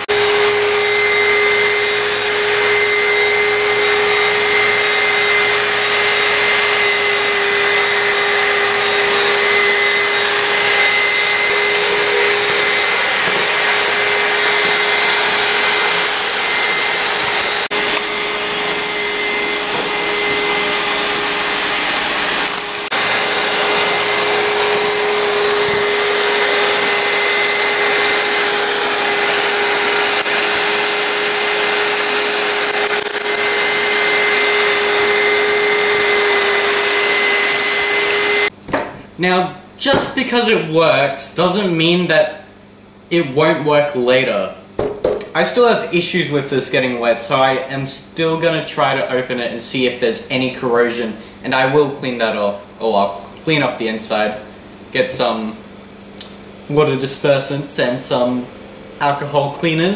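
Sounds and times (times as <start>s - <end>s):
robot vacuum whirring: 0.0s - 38.5s.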